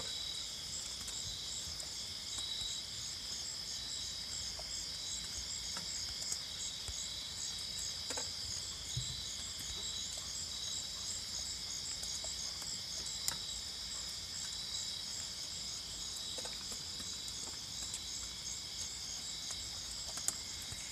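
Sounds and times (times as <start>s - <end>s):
crickets chirping: 0.0s - 20.9s
faint ticks: 11.8s - 14.6s, 16.1s - 20.9s.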